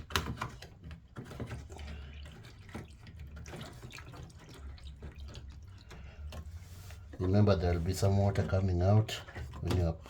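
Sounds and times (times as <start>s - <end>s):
water trickling and dripping: 1.4s - 8.6s.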